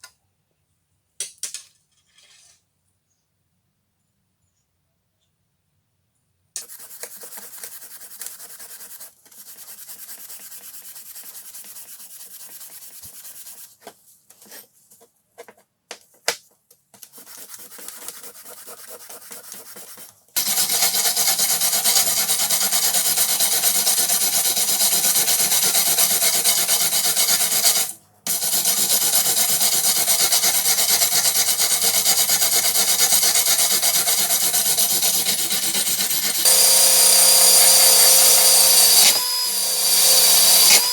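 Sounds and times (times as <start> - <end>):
loud steady abrasive noise: 36.5 - 40.9.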